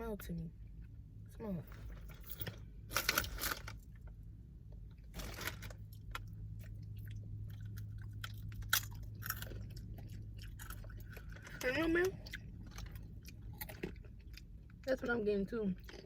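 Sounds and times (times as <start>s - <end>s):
crunchy snack being chewed: 5.1s - 14.8s.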